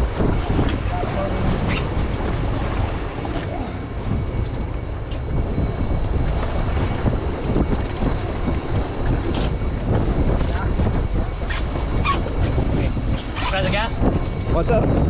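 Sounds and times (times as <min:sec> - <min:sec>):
wind buffeting microphone: 0:01.2 - 0:15.0
rushing water: 0:03.1 - 0:05.4.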